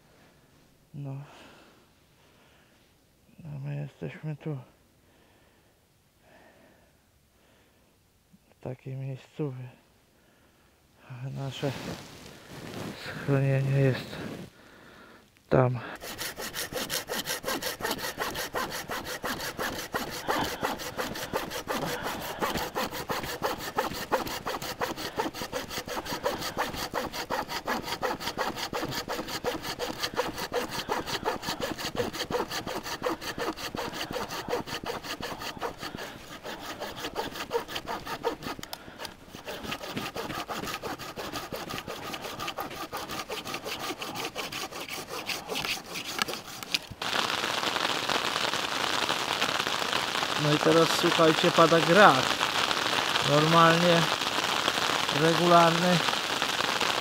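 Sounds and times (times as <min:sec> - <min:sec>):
hand saw cutting wood: 0:15.9 - 0:47.1, 0:50.4 - 0:56.9
hail falling: 0:47.0 - 0:57.0.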